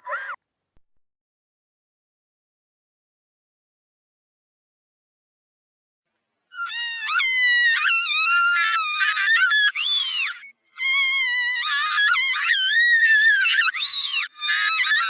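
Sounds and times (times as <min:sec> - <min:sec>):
high-pitched cartoon crying wail: 0:06.6 - 0:15.0.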